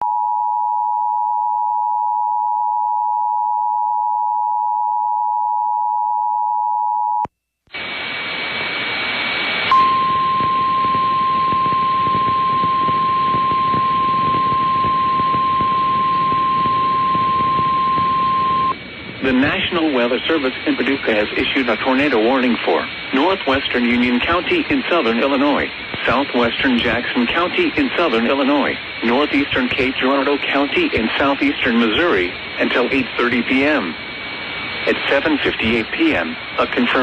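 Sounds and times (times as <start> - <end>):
radio static hiss: 7.7 - 37.0
steady warning alarm tone: 9.7 - 18.8
two-tone alert signal: 9.7 - 18.8.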